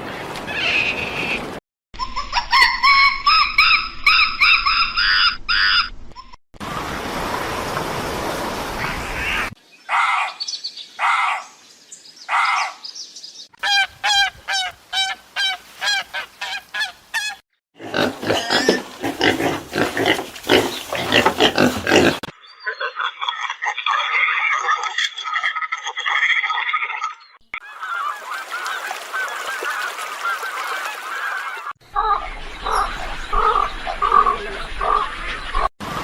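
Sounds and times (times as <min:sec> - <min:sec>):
drawn-out pitched animal calls: 0:13.6 - 0:23.0
rapid chattering animal calls: 0:13.8 - 0:24.9.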